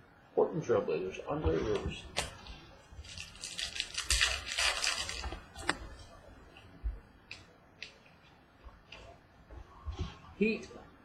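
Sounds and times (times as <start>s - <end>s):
trading cards rustling: 3.0s - 6.1s.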